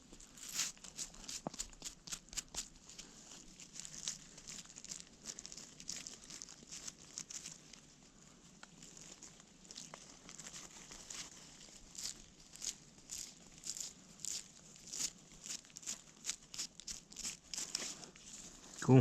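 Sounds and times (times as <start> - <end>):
hand rubbing soil: 8.6 - 19.0.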